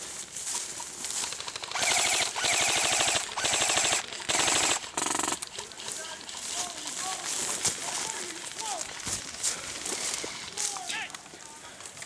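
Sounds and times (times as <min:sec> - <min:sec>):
airsoft guns firing bursts: 0:01.2 - 0:09.0.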